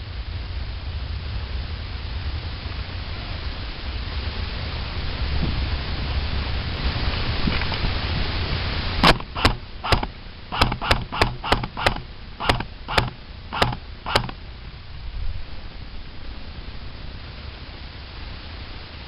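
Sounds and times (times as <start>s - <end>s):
airsoft gun shots: 9.0s - 14.4s
steady rustling: 9.0s - 14.8s.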